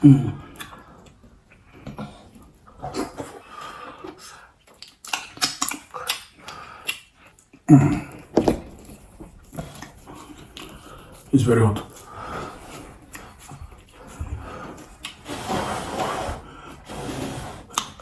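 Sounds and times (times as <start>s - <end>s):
wet chewing and lip smacks: 4.0s - 7.6s.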